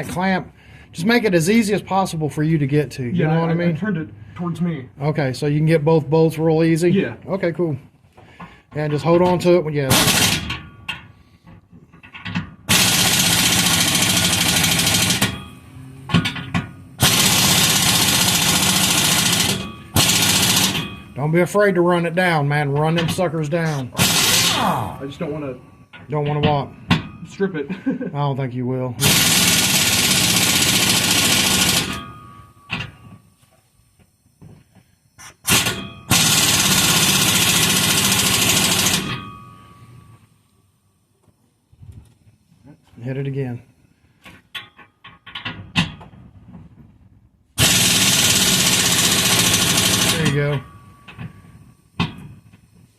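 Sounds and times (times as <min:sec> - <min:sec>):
impact wrench hammering: 0:09.9 - 0:11.0, 0:12.0 - 0:21.3, 0:22.8 - 0:24.8, 0:29.0 - 0:33.2, 0:35.4 - 0:39.8, 0:47.6 - 0:51.3.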